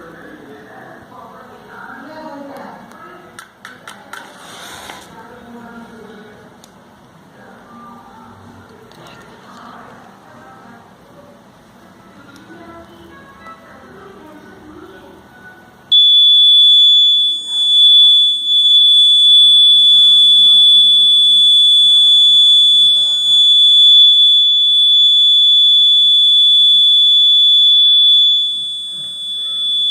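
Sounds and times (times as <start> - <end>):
fire alarm tone: 15.9 - 29.9.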